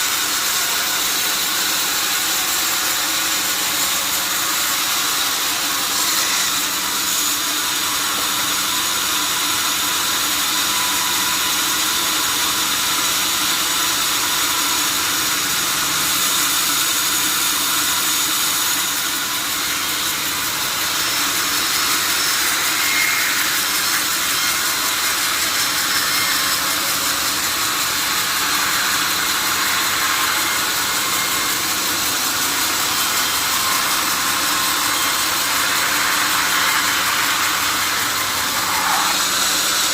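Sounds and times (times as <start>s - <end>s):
sawmill saw running: 0.0s - 39.9s.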